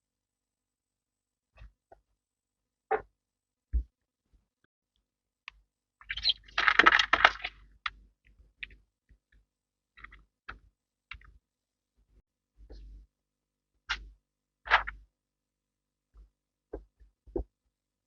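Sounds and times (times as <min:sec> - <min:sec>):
small hard objects clattering: 0:06.1 - 0:07.7.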